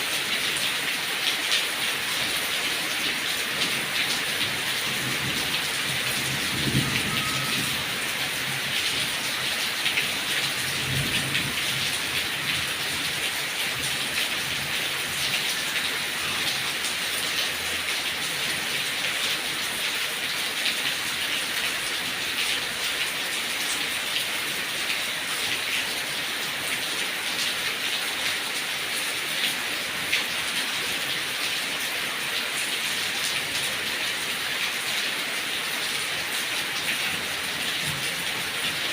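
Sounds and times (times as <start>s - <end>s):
heavy rain on leaves: 0.0s - 38.9s.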